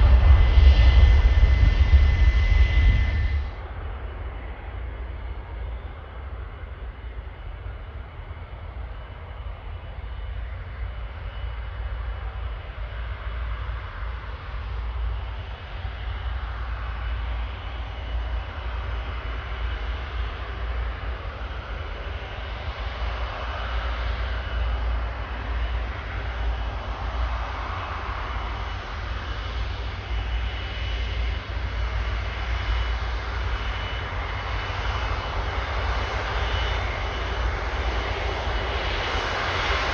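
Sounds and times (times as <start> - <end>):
jet engines rumbling and whining: 0.0 - 39.9.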